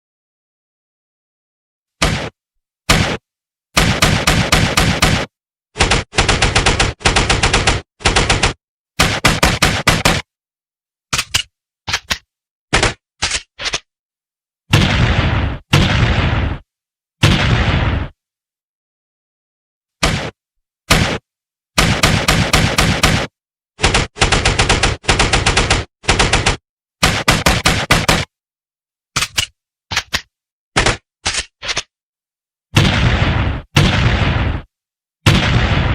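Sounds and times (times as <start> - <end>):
automatic gunfire bursts: 3.8 - 10.2, 21.8 - 28.3.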